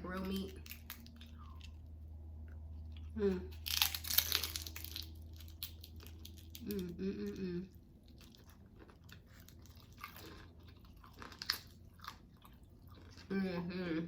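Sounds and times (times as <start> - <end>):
crunchy taco chewing: 0.2 - 6.9, 7.7 - 13.3
person humming mmm: 6.6 - 7.8.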